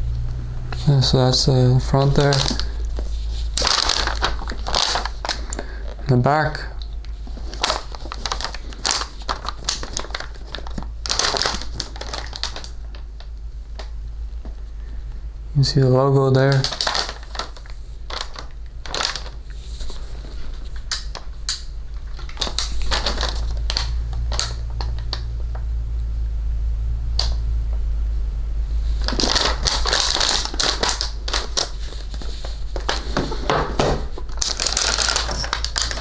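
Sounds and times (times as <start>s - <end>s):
steady deep hum: 0.0s - 36.0s
packaging crinkling and rustling: 0.4s - 15.3s, 16.3s - 25.8s, 28.7s - 36.0s
clicks and knocks: 32.8s - 36.0s.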